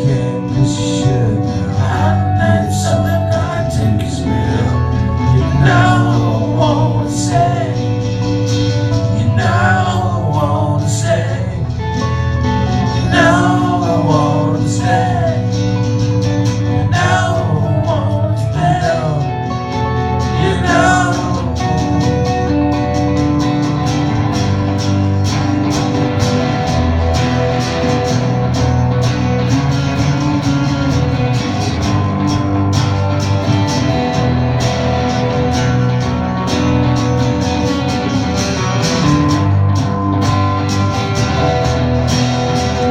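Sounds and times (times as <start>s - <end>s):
person singing: 0.0s - 8.4s, 9.0s - 11.8s, 12.9s - 15.8s, 16.6s - 19.6s, 20.2s - 22.4s
strummed acoustic guitar: 0.0s - 42.9s.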